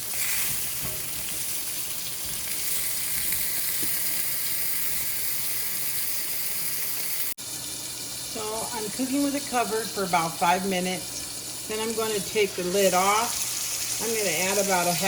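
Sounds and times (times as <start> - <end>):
beets sizzling in a pan: 0.0 - 15.0.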